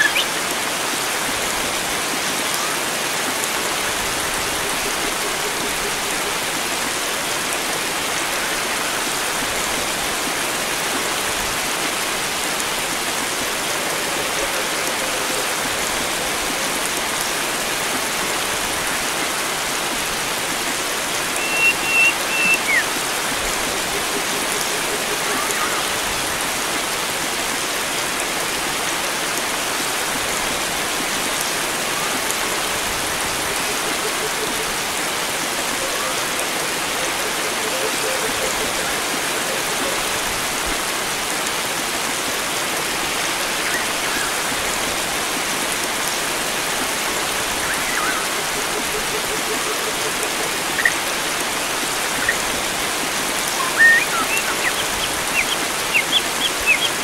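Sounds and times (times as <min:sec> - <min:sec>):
bird calling: 0:00.0 - 0:00.4, 0:21.3 - 0:22.9, 0:53.5 - 0:57.0
water rushing: 0:00.0 - 0:57.0.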